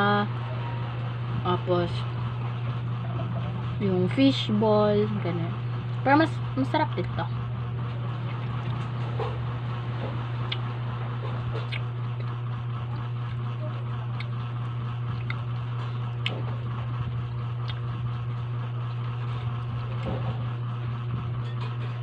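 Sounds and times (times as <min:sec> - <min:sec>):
low mechanical hum: 0:00.0 - 0:22.0.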